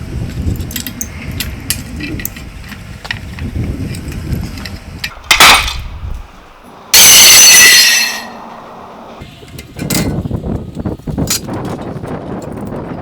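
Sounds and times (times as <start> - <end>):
metal parts clanking: 7.6 - 8.6.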